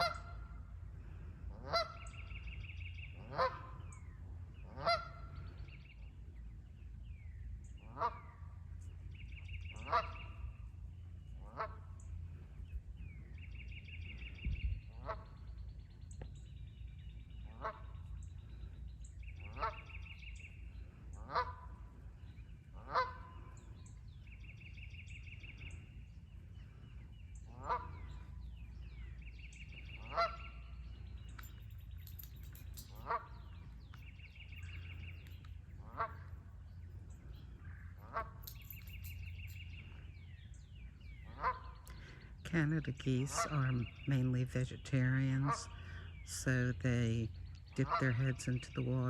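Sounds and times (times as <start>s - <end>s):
goose honking: 0.0s - 0.4s, 1.5s - 2.2s, 3.2s - 3.9s, 4.7s - 5.4s, 9.8s - 10.4s, 19.4s - 20.2s, 21.2s - 21.9s, 22.8s - 23.7s, 27.5s - 28.3s, 29.9s - 30.8s, 35.8s - 36.4s, 41.3s - 41.9s, 42.7s - 44.0s, 45.3s - 46.0s, 47.8s - 48.9s
low background rumble: 0.0s - 49.0s.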